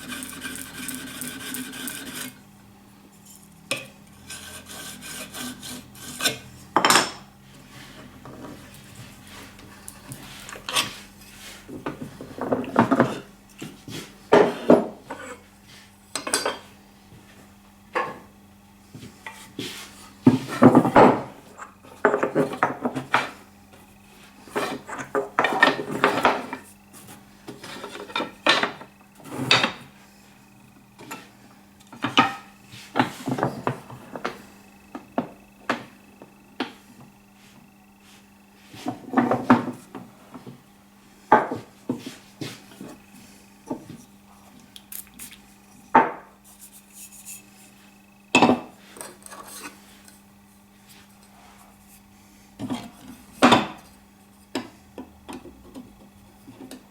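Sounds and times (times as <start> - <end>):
metal scraping on metal: 0.0 - 2.4, 4.1 - 6.7.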